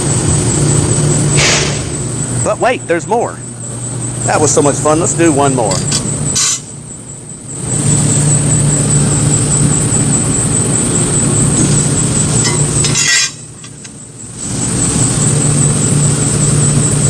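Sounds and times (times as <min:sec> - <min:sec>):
sharp machine clack: 0:00.0 - 0:03.4, 0:04.3 - 0:06.8, 0:11.1 - 0:15.4
machine hum with high whine: 0:00.0 - 0:17.0.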